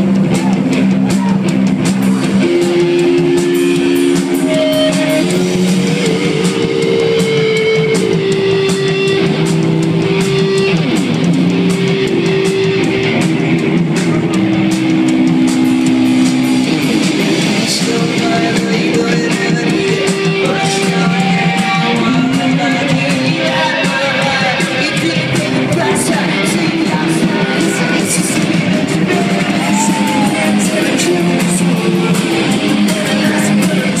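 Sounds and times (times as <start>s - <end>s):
person singing or shouting: 0.0s - 1.6s, 16.8s - 34.0s
distorted electric guitars: 0.0s - 34.0s.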